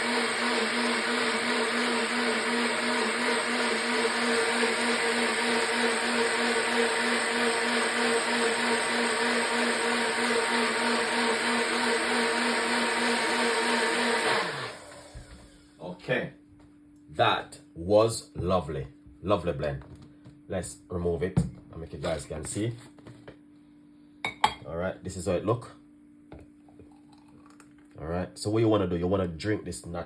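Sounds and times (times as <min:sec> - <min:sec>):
blender running: 0:00.0 - 0:15.7.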